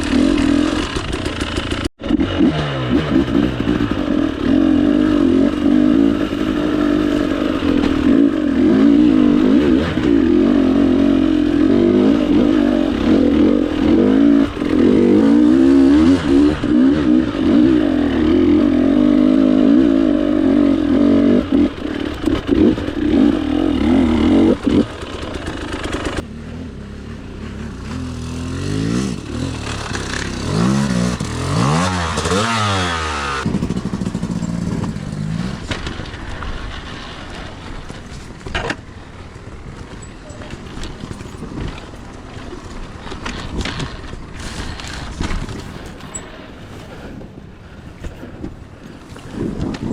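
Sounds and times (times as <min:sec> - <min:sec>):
dirt bike engine revving: 0:00.0 - 0:38.3.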